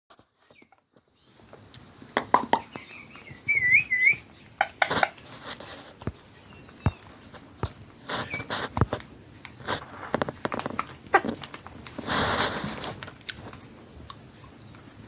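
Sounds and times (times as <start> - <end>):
parrot whistling: 2.6 - 4.3.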